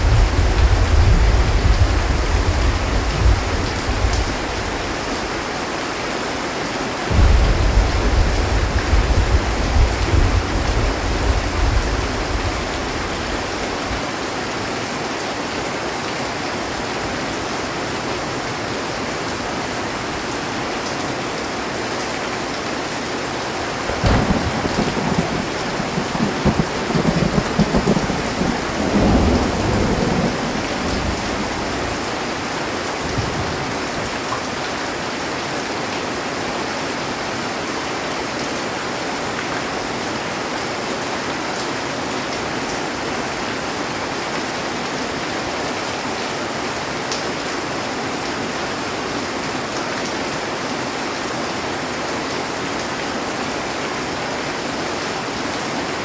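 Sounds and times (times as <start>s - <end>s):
thunder rumbling: 0.0s - 5.4s, 7.1s - 14.0s, 23.6s - 34.1s
heavy rain on a metal roof: 0.0s - 56.0s
sharp thunder crack: 7.1s - 13.4s, 23.8s - 32.2s.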